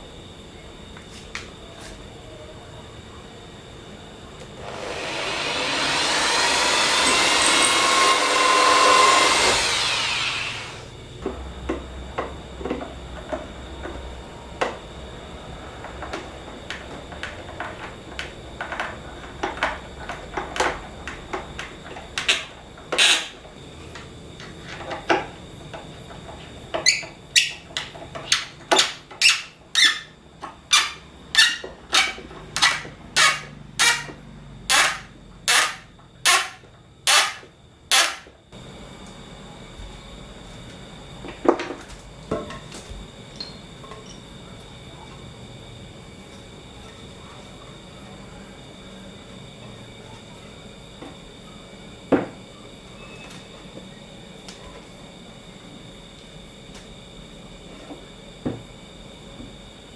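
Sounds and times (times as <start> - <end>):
power tool running: 4.5 - 11.0, 32.6 - 38.3.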